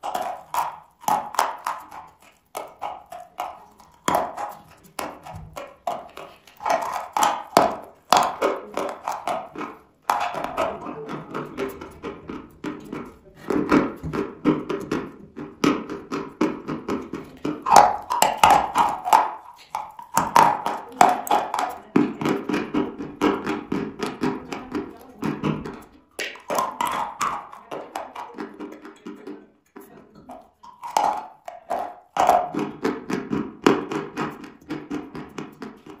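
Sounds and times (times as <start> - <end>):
chalk being chewed: 0.0 - 10.7.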